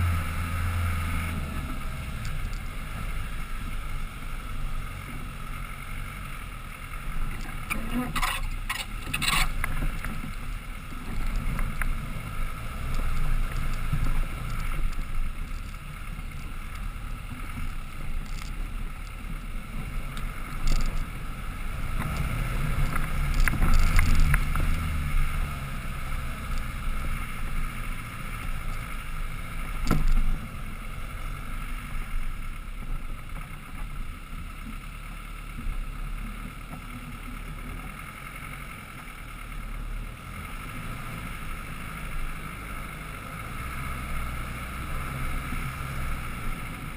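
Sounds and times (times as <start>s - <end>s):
low engine rumble: 0.0s - 46.9s.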